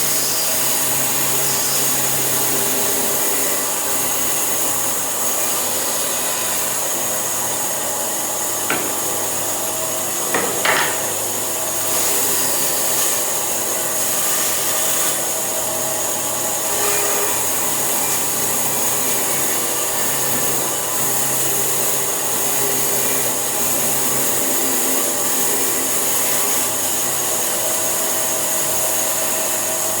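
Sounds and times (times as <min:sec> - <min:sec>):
power tool working wood: 0:05.4 - 0:11.2
brief knocks: 0:10.3 - 0:11.2.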